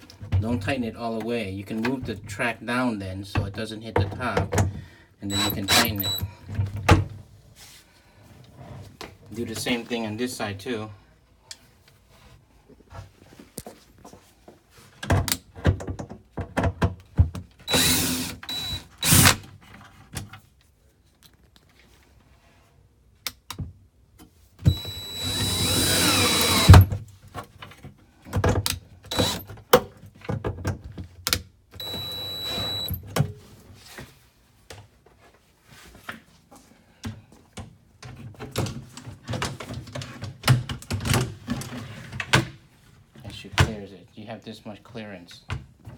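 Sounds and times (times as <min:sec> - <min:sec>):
cordless drill whining: 0:05.3 - 0:06.3, 0:17.7 - 0:19.4, 0:24.7 - 0:26.9, 0:29.1 - 0:29.4, 0:31.8 - 0:33.0.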